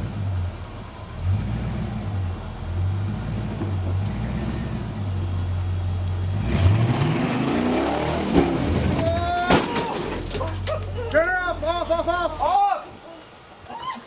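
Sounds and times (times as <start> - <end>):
vehicle engine idling and revving: 0.0 - 9.4.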